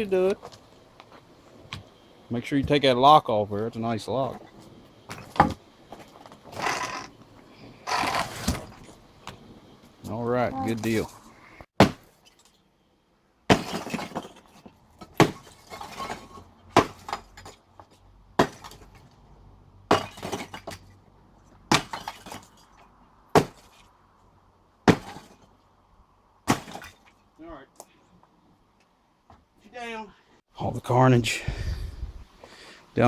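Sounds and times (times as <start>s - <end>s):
sledgehammer striking concrete: 11.8s - 12.1s, 13.5s - 14.4s, 15.1s - 17.5s, 18.4s - 18.8s, 24.8s - 25.3s
breaking pieces clattering: 13.5s - 17.6s, 19.9s - 21.0s.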